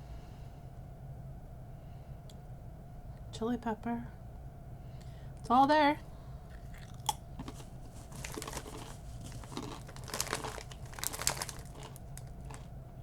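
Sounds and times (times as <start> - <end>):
chip bag crinkling: 6.6 - 12.7.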